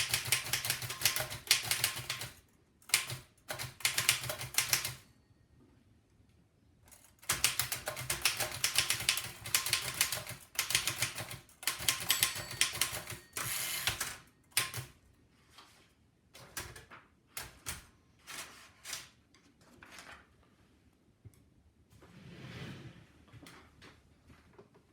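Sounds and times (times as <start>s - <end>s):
typewriter keystrokes clattering: 0.0s - 5.0s, 6.9s - 15.0s, 16.4s - 19.1s
typewriter rattle: 0.0s - 5.0s, 7.0s - 14.9s.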